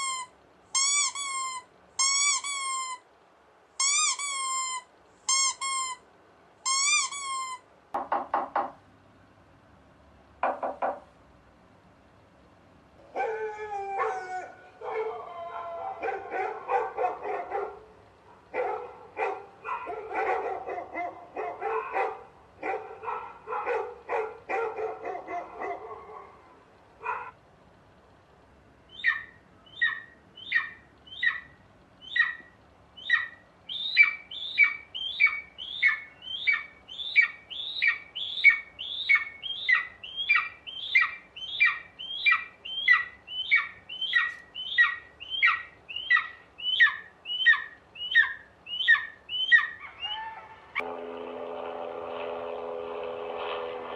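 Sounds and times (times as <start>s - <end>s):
dog whining and yipping: 0.0s - 3.0s, 13.2s - 17.6s, 33.1s - 50.8s
squeaky toy squeaking: 0.0s - 3.0s, 3.8s - 6.0s, 6.6s - 7.6s.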